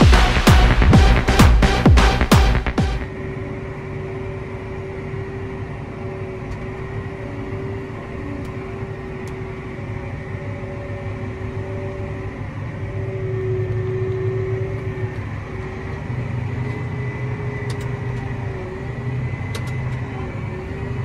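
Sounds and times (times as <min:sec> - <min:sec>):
combine harvester rumbling: 0:00.0 - 0:21.0.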